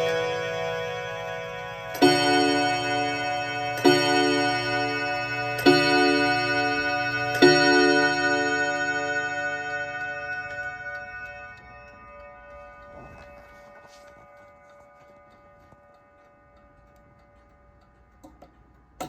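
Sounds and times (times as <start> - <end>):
clock striking a gong: 0.0 - 17.0.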